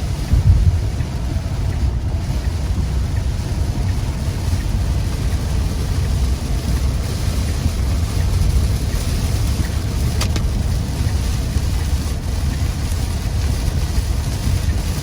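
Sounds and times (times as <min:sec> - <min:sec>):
heavy rain on a car: 0:00.0 - 0:15.0
road and engine rumble: 0:00.0 - 0:15.0.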